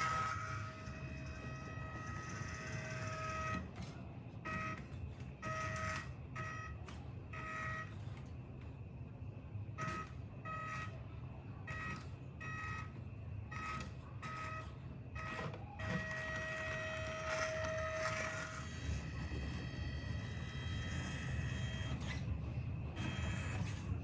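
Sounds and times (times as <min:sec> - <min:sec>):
long steady beep tone: 0:09.8 - 0:11.0, 0:11.7 - 0:18.1.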